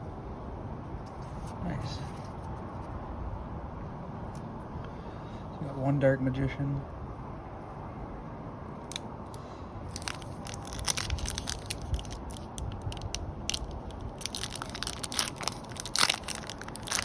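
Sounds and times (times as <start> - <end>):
foil wrappers crinkling: 9.9 - 17.0.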